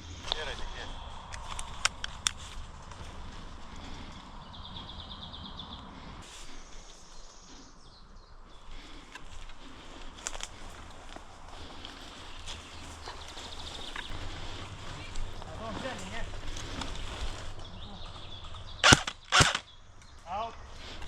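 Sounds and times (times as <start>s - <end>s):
footsteps: 0.0s - 4.4s
birds singing: 0.0s - 21.0s
sharp clicks: 1.3s - 3.0s, 18.4s - 20.2s.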